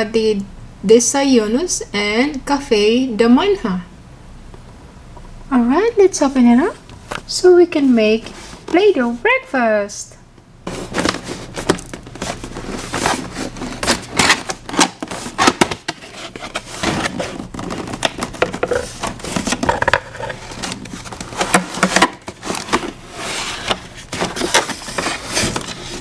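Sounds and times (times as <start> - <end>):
packaging crackling and scraping: 10.7 - 26.0.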